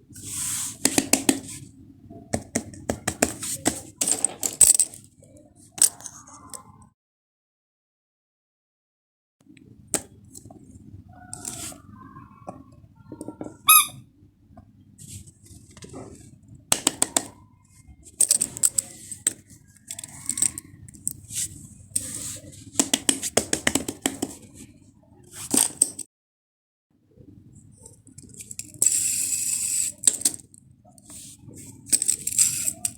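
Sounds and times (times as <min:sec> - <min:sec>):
plastic toys clicking and tapping: 0:02.3 - 0:06.6, 0:16.7 - 0:17.4, 0:18.1 - 0:21.2, 0:22.0 - 0:24.5, 0:25.5 - 0:26.0, 0:27.8 - 0:32.9
short sharp squeak: 0:13.6 - 0:14.0.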